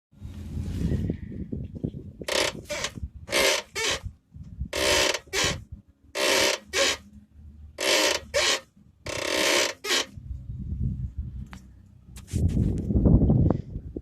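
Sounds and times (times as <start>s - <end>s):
car suspension squeaking: 2.2s - 10.2s.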